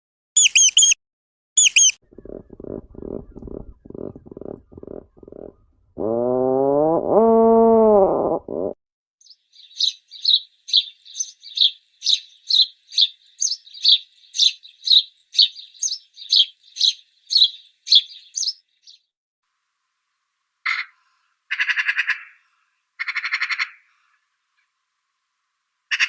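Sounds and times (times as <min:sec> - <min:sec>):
small bird chirping: 0:00.4 - 0:01.0, 0:01.6 - 0:06.1, 0:09.2 - 0:19.1
lower animal call: 0:01.7 - 0:08.8.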